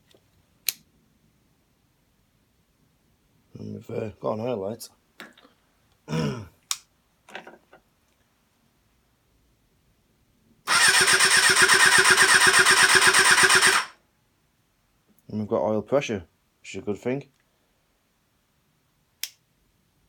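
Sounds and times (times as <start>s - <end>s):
engine cranking on electric starter: 10.7s - 13.9s.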